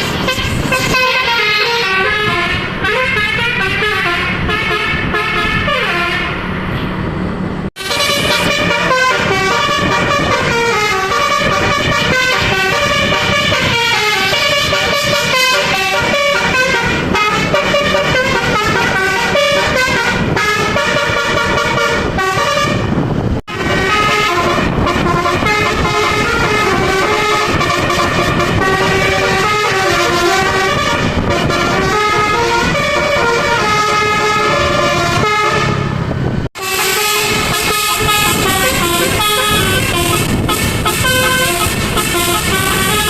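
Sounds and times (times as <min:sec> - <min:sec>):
musical air horns playing tune: 0:00.0 - 0:06.4, 0:07.8 - 0:36.0, 0:36.6 - 0:43.0.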